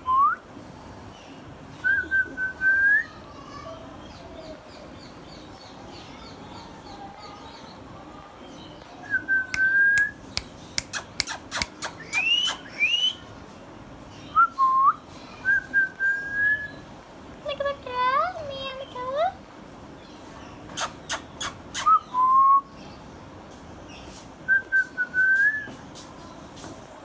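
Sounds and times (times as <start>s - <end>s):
parrot whistling: 9.5s - 13.2s, 20.8s - 22.4s
parrot sharp clicks: 9.6s - 12.7s, 20.8s - 21.9s.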